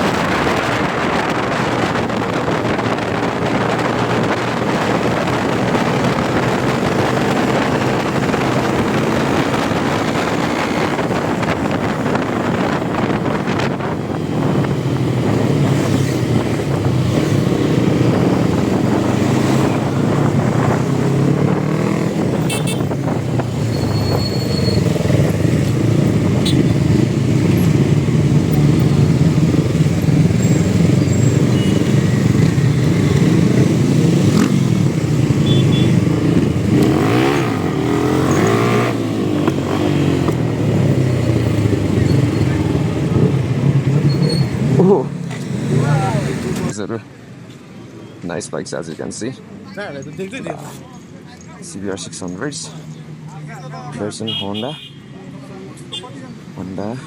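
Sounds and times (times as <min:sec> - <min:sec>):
wind noise: 0:00.0 - 0:44.9
motorcycle engine revving: 0:00.0 - 0:46.7.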